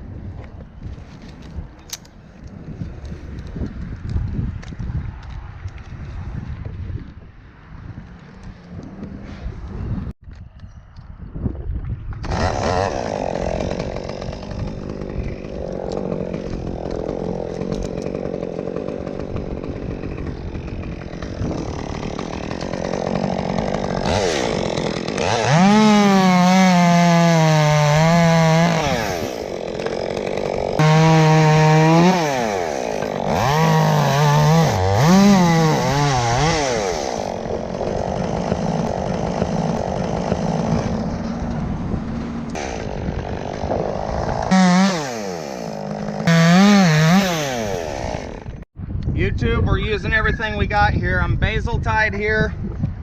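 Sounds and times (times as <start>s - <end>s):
chainsaw cutting wood: 12.2s - 48.7s.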